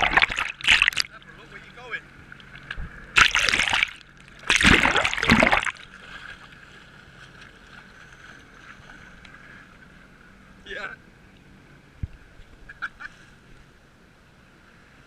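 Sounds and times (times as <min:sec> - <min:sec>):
water splashing and rushing: 0:00.0 - 0:09.3
jet ski engine hum: 0:00.0 - 0:15.0.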